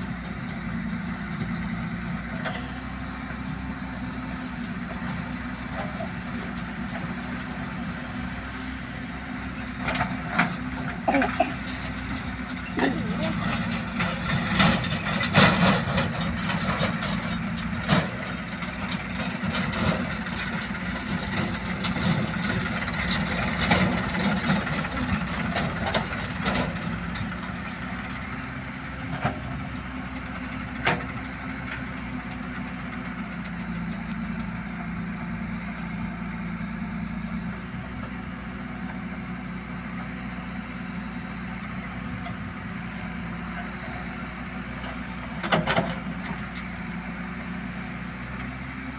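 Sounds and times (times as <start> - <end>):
diesel engine running: 0.0 - 48.9
sharp metal knocks and clanks: 10.5 - 27.9.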